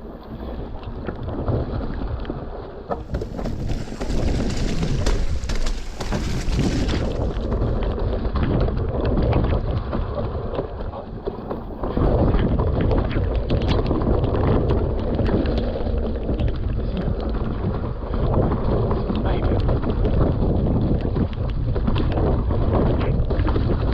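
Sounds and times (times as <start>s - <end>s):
wind buffeting microphone: 0.0s - 23.9s
bike clicking and rattling: 2.9s - 7.8s.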